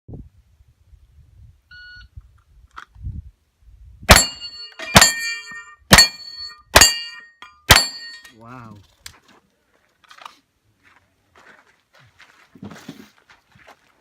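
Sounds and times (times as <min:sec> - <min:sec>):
gunshots: 0:04.1 - 0:05.3, 0:07.7 - 0:08.2
metallic target ring: 0:04.1 - 0:08.4.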